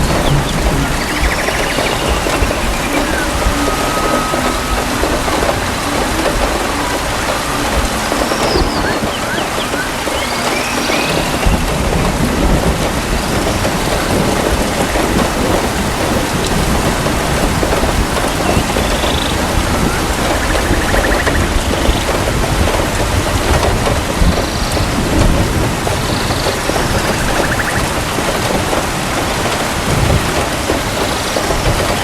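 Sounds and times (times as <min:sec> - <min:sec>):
low thunder rumbling: 0:00.0 - 0:32.0
steady rain falling: 0:00.0 - 0:32.0.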